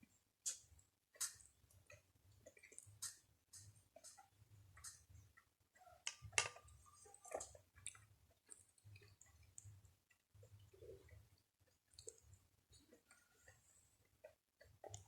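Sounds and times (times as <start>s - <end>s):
chewing with wet mouth clicks: 0.4s - 5.1s, 6.1s - 15.0s.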